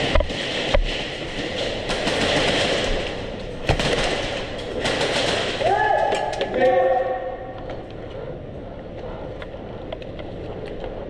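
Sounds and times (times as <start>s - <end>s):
sharp cracks: 0.0s - 6.6s
airsoft guns firing: 0.4s - 6.4s.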